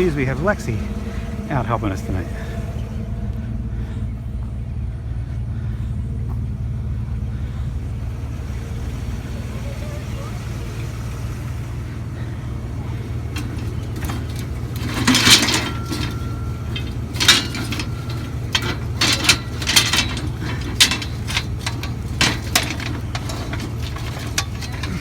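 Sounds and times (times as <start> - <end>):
vehicle engine idling: 0.0 - 25.0
metal scrap clanking: 12.7 - 25.0
metallic ring: 13.3 - 25.0.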